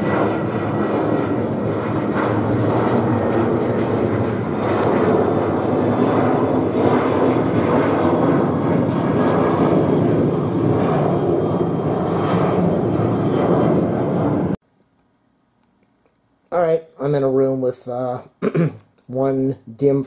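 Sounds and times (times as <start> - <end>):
airplane engines droning: 0.0 - 14.6.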